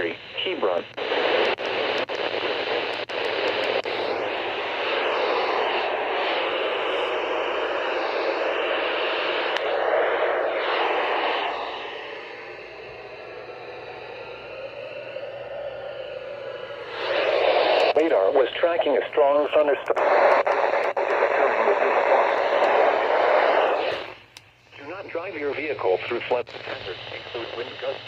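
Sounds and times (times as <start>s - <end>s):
radio static hiss: 0.0s - 28.0s
sharp clicks: 1.4s - 4.0s, 17.6s - 18.0s.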